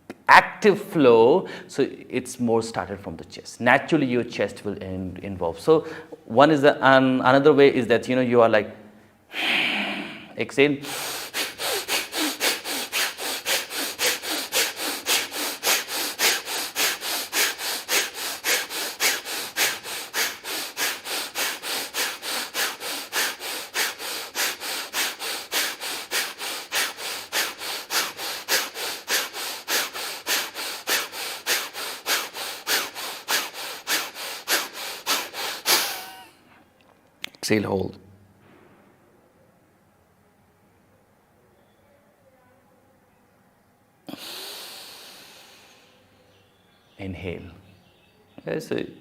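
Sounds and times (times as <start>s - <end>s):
rapid forceful nose breathing: 9.3s - 36.3s, 44.1s - 45.8s.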